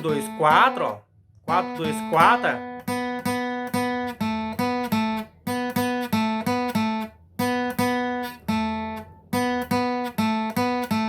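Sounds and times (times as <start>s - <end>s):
acoustic guitar picking melody: 0.0s - 11.0s.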